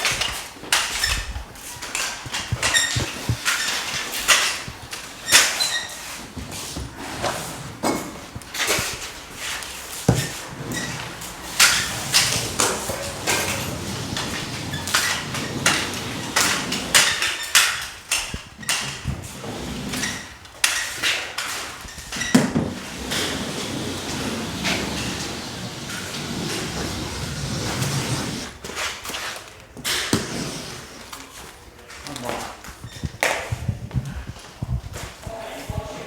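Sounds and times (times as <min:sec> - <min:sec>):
tools clattering: 0:10.2 - 0:19.0.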